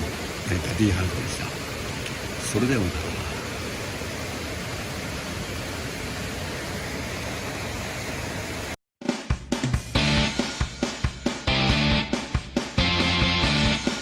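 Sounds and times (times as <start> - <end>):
steady rushing noise: 0.0 - 8.8
guitar rock song: 9.3 - 14.0.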